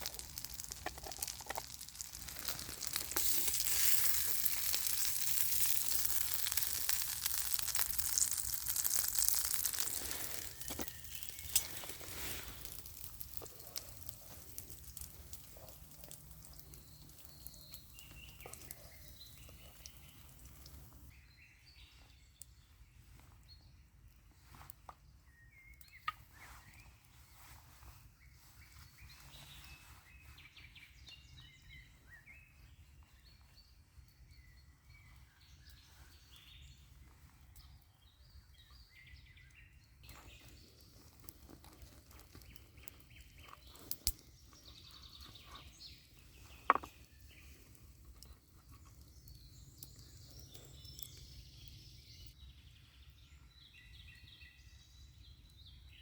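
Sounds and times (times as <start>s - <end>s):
faint bird chirps: 25.2s - 41.1s, 42.3s - 56.0s.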